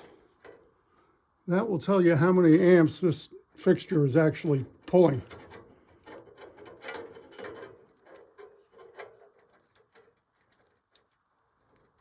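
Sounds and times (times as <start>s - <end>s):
handling clicks and rustles: 4.8s - 12.0s.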